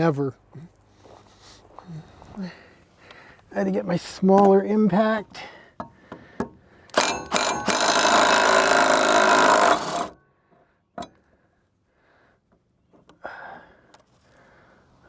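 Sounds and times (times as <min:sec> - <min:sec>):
impact wrench hammering on bolt: 0:05.8 - 0:10.2.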